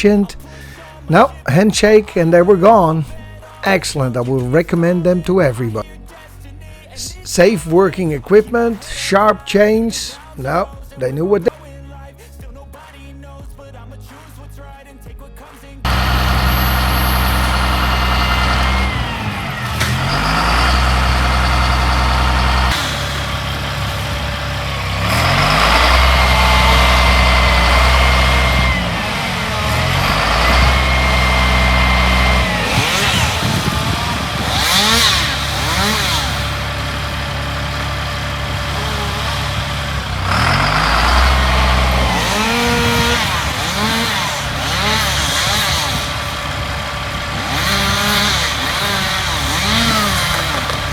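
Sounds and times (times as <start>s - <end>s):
engine-powered equipment running: 6.7s - 11.5s, 15.8s - 50.9s
engine revving up: 6.9s - 11.6s, 15.8s - 50.9s.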